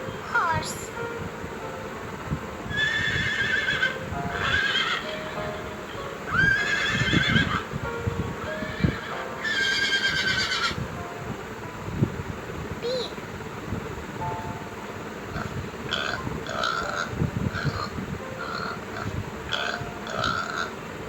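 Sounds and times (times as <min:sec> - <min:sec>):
background music: 0:00.0 - 0:21.0
horse neighing: 0:02.7 - 0:05.3, 0:06.3 - 0:07.6, 0:08.6 - 0:10.8.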